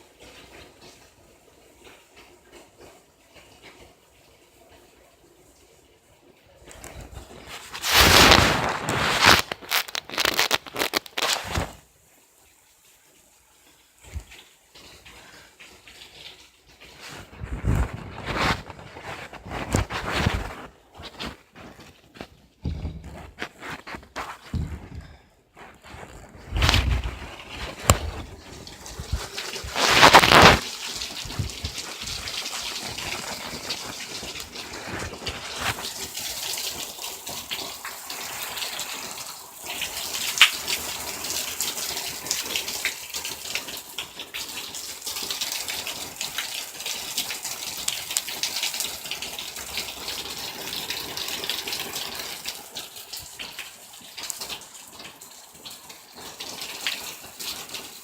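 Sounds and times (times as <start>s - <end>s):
heavy rain pouring: 0.0s - 58.0s.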